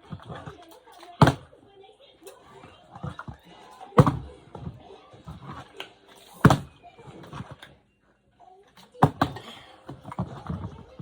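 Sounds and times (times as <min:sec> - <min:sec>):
faint low chatter: 0:00.0 - 0:11.0
bottle knocking on hard surface: 0:04.0 - 0:04.7.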